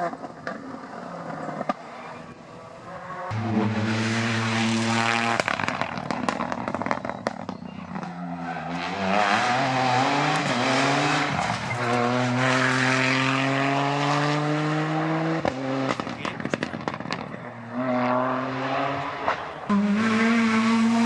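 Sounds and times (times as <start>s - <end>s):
car engine revving: 0.0s - 21.0s
exhaust crackles and pops: 3.3s - 8.2s, 15.4s - 17.5s.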